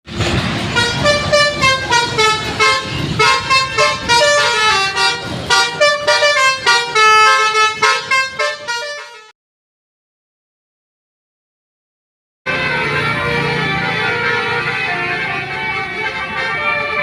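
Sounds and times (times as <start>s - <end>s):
bus horn playing a melody: 0.6s - 9.4s, 12.5s - 17.0s.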